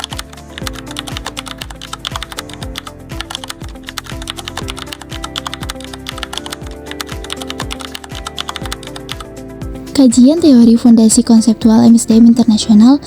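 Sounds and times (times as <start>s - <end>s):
keyboard typing clicks: 0.0s - 9.4s
background music with low beat: 0.0s - 13.0s.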